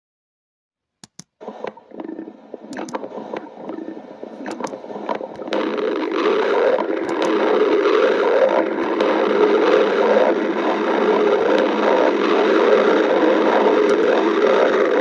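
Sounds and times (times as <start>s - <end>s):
sharp clicks: 1.0s - 3.8s, 4.4s - 9.4s
stomach gurgling and rumbling: 1.4s - 15.0s.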